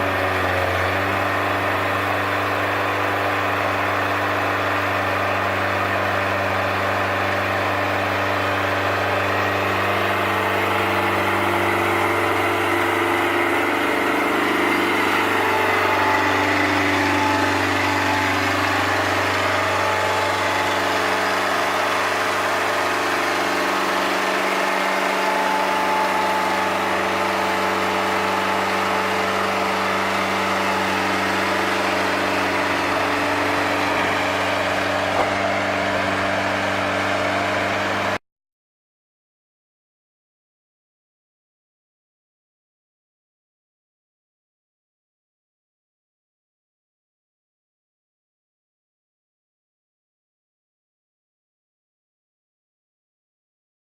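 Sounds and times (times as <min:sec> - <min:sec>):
diesel engine running: 0:00.0 - 0:38.2.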